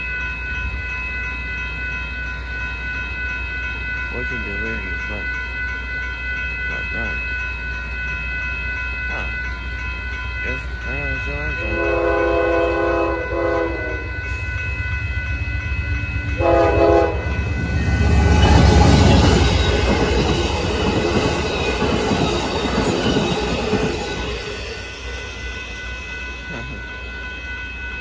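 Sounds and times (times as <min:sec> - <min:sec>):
train passing with heavy rumble: 0:00.0 - 0:28.0
train air horn chord: 0:11.5 - 0:14.4, 0:16.4 - 0:18.3
rushing wheel noise: 0:14.0 - 0:25.9.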